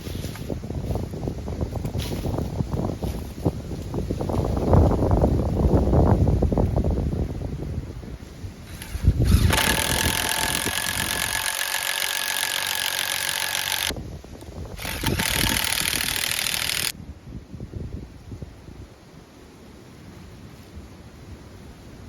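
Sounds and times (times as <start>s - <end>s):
chainsaw running at high revs: 8.7s - 14.0s, 14.8s - 16.9s.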